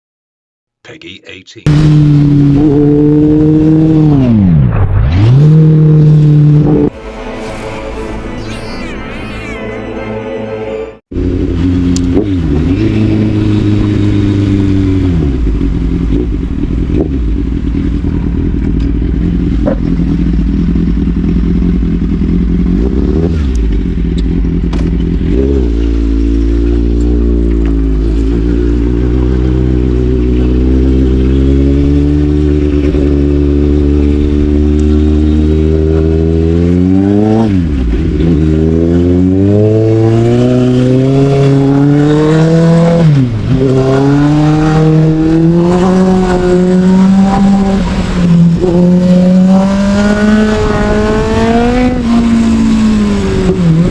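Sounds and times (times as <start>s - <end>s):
motorcycle engine revving: 1.7s - 7.0s, 11.1s - 53.9s.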